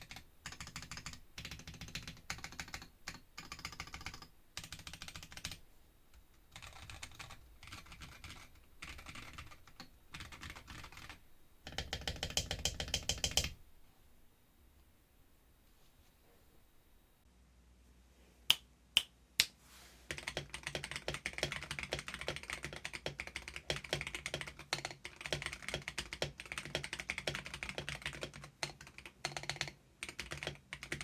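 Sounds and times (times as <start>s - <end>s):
mechanical keyboard typing: 0.0s - 5.6s, 6.5s - 13.6s, 20.1s - 31.0s.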